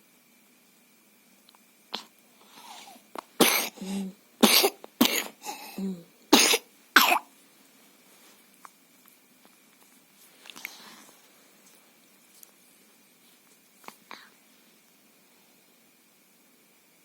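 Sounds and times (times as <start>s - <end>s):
baby coughing: 3.4s - 7.3s
baby catching breath: 5.4s - 5.9s.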